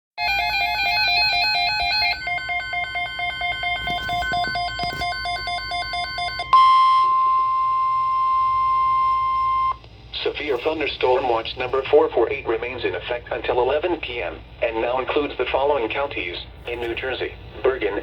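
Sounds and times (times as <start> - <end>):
electronic alarm warbling and beeping: 0.6 - 6.7
steady weather radio warning tone: 0.6 - 18.0.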